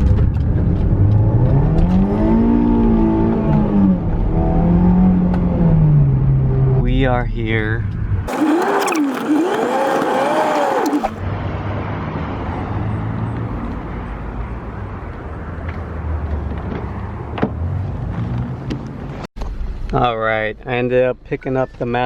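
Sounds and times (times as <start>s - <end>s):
car engine rumble: 8.3s - 11.2s.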